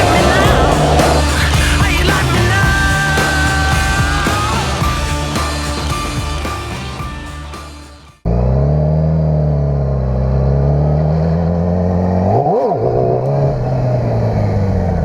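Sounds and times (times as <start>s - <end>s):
motorcycle engine running: 0.0s - 10.6s.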